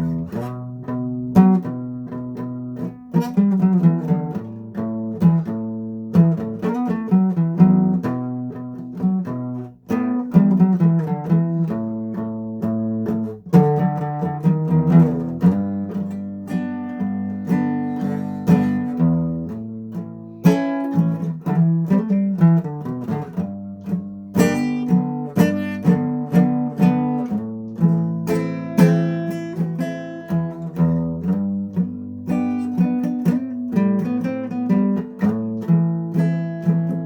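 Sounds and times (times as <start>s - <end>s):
acoustic guitar chords: 0.0s - 37.0s.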